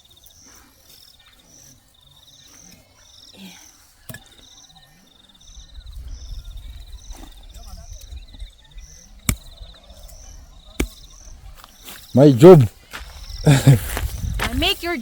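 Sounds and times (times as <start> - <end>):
insects chirping: 0.0 - 15.0.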